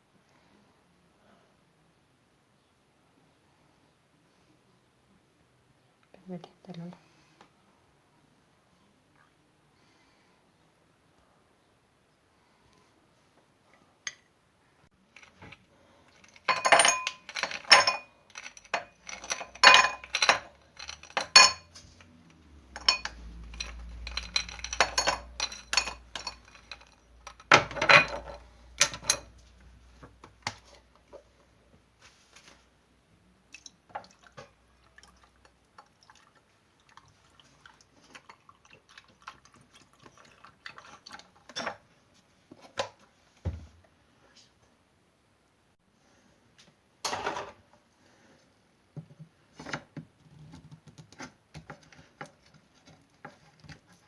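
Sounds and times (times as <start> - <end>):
dishes and cutlery clattering: 15.2 - 29.4, 47.0 - 47.6.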